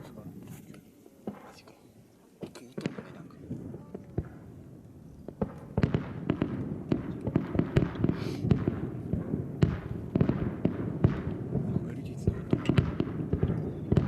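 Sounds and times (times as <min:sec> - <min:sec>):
distant fireworks bursting: 0:00.0 - 0:01.8, 0:02.4 - 0:14.0.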